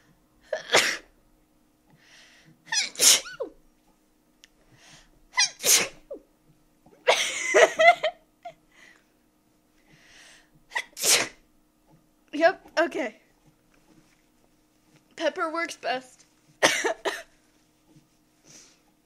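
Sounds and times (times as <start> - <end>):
person sneezing: 0.5 - 1.1, 2.7 - 3.6, 5.4 - 6.2, 10.7 - 11.4.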